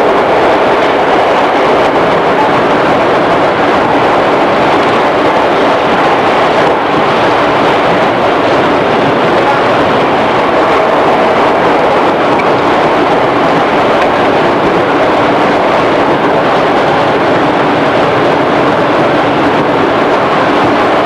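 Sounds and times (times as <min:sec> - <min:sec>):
traction motors humming: 0:00.0 - 0:21.0
train wheels rumbling on rail: 0:00.0 - 0:21.0.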